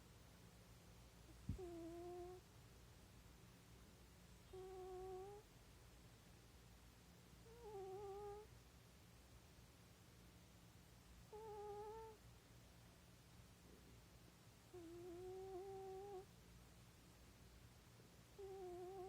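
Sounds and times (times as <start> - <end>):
cat snoring with whistling: 1.5 - 2.4, 4.5 - 5.4, 7.5 - 8.5, 11.3 - 12.2, 14.8 - 16.2, 18.4 - 19.0.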